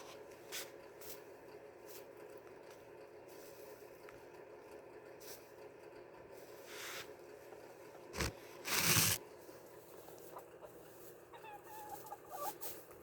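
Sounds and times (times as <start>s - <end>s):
faint steady hum: 0.0s - 13.0s
chickens rustling and scratching: 8.2s - 13.0s
chickens clucking softly: 9.8s - 12.9s.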